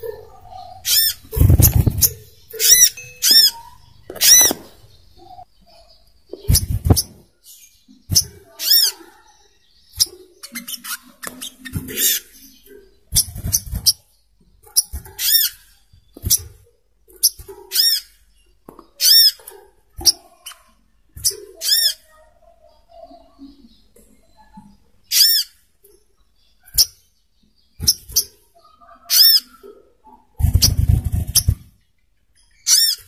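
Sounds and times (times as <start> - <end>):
bird high sharp calls: 0.0 - 16.5.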